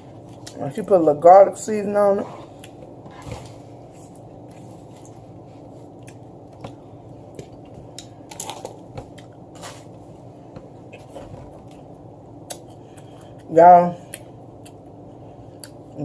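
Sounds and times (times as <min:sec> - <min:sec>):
chewing and mouth smacking: 0:05.9 - 0:09.4, 0:12.4 - 0:13.5, 0:14.1 - 0:14.8.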